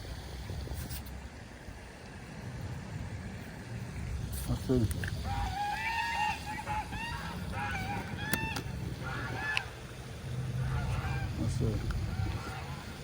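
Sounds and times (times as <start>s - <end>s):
geese honking: 5.2s - 13.0s.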